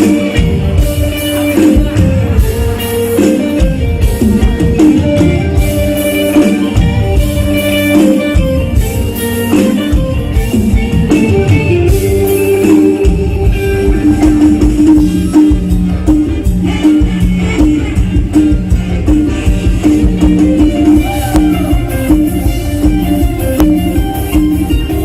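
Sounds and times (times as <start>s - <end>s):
live band music: 0.0s - 25.0s
steady drum beat: 0.0s - 25.0s.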